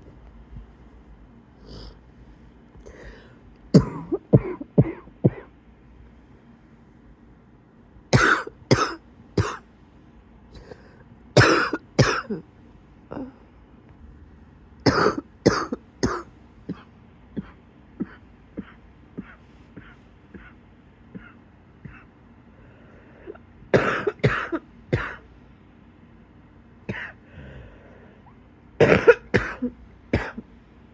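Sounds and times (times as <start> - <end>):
wheezy coughing: 2.9 - 5.6, 8.1 - 9.6, 10.6 - 12.5, 14.8 - 22.1, 23.2 - 25.3, 26.9 - 27.2, 28.8 - 30.5.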